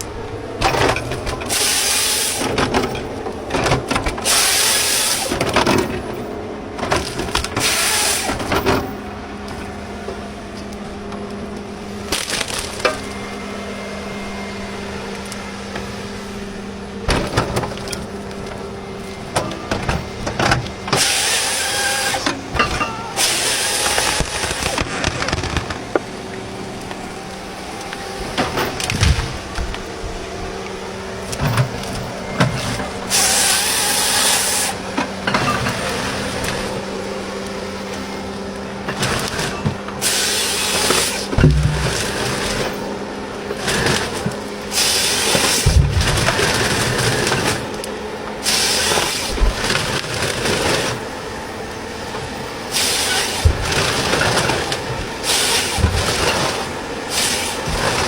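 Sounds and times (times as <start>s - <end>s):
log splitter engine running: 0.0s - 58.0s
wood cracking and breaking: 12.0s - 13.2s, 19.7s - 26.2s, 38.9s - 42.9s.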